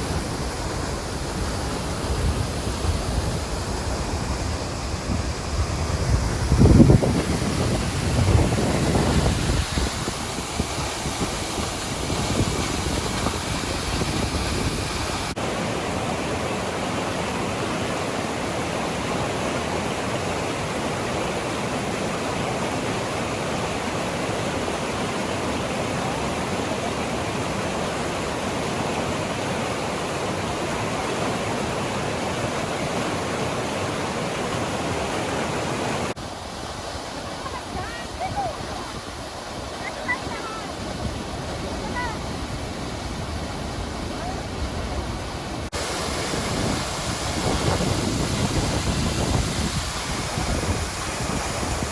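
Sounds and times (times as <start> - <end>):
wind buffeting microphone: 0.0 - 15.4, 35.9 - 51.9
waterfall roaring: 0.0 - 51.9.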